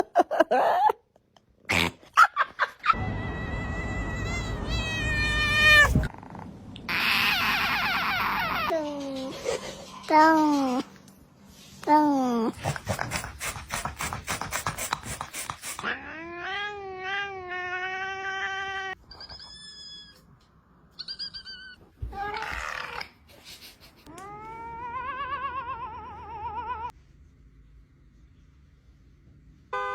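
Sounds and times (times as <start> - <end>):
cat crying: 2.9 - 6.1, 6.9 - 8.7, 15.8 - 20.2, 24.1 - 26.9.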